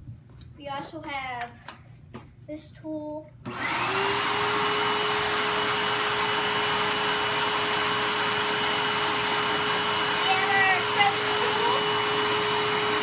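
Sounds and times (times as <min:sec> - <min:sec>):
vacuum cleaner running: 0:03.5 - 0:13.0.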